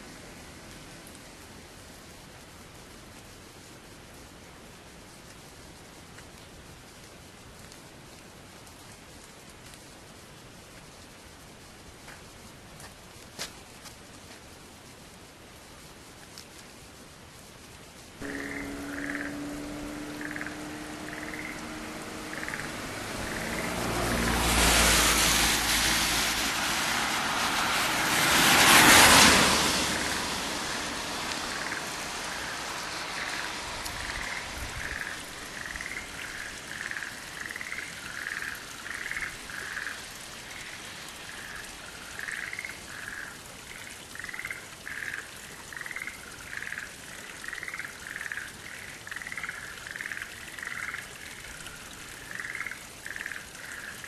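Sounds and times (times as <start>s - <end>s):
loud rushing noise: 18.2s - 35.6s
frogs croaking: 18.2s - 54.0s.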